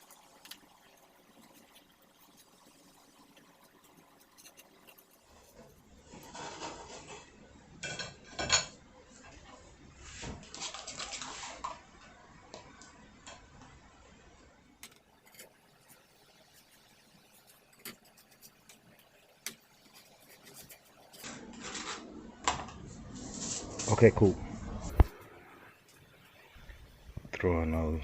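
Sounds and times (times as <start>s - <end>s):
metal pans and utensils clattering: 4.3s - 8.8s, 10.2s - 11.8s.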